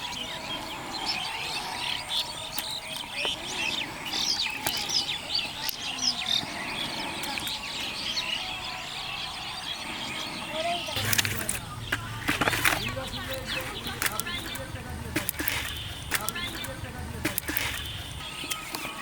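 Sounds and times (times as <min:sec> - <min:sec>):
birds chirping: 0:00.0 - 0:19.0
sharp clicks: 0:11.0 - 0:19.0.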